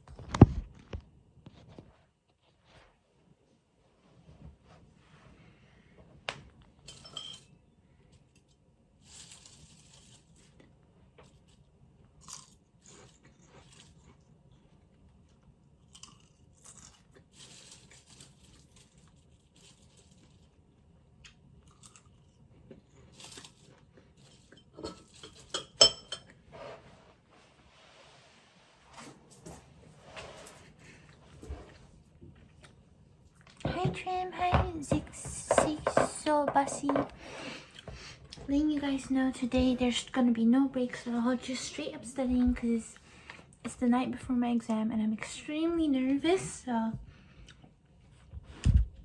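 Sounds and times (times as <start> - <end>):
crunchy food being chewed: 12.1 - 20.6, 21.2 - 24.6.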